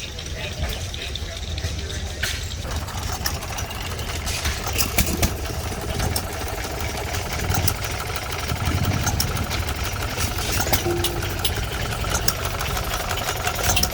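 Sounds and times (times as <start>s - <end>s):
sharp engine clicks: 0.0s - 13.9s
stationary gas engine thrumming: 0.0s - 13.9s.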